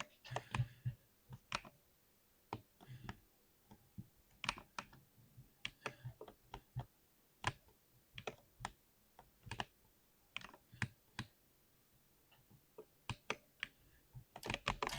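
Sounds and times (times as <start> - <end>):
mechanical keyboard keystrokes: 14.4 - 14.9.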